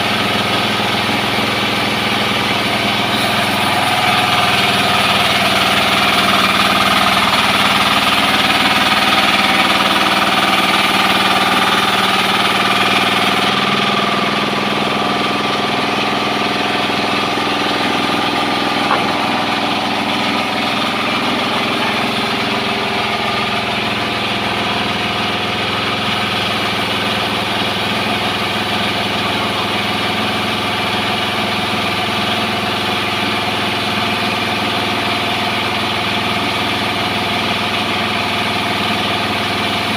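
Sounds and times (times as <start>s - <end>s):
sawmill engine running: 0.0s - 39.9s
short knock: 18.8s - 19.6s.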